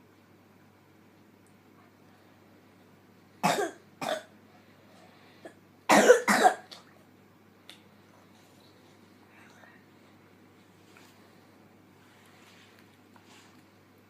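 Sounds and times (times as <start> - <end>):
boy coughing: 3.4 - 4.3, 5.9 - 6.7.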